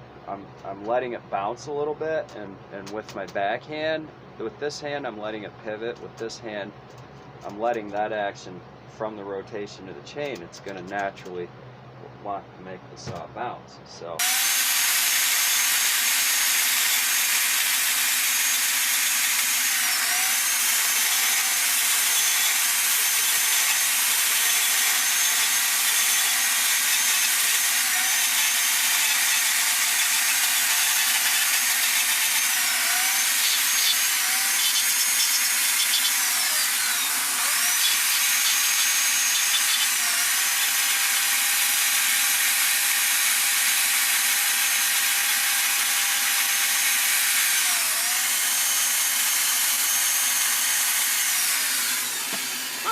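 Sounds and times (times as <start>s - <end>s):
chainsaw cutting wood: 14.2s - 52.9s.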